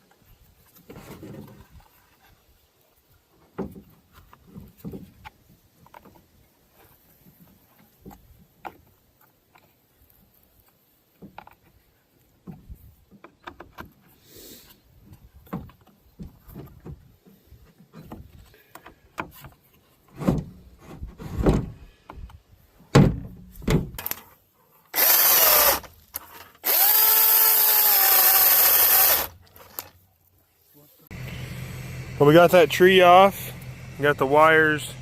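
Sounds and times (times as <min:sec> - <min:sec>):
electric chainsaw running: 0:25.0 - 0:25.9, 0:26.6 - 0:29.8, 0:31.1 - 0:35.0.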